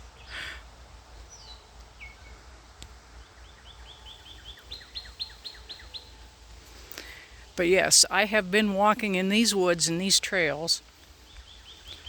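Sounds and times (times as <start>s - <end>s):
songbird singing: 0.0s - 12.0s.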